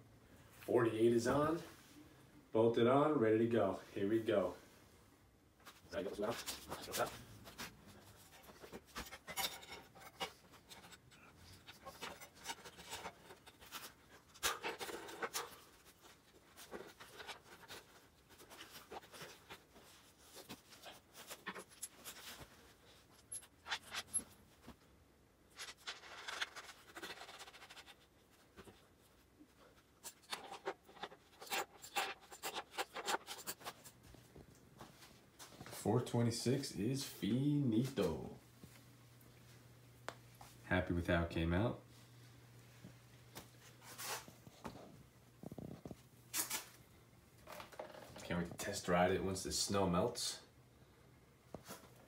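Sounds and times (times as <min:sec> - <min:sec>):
tools clicking and scraping: 0:08.3 - 0:19.6, 0:20.3 - 0:24.4.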